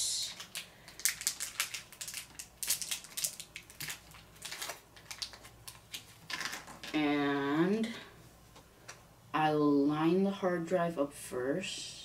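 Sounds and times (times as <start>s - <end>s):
packaging crinkling: 0.2s - 7.0s.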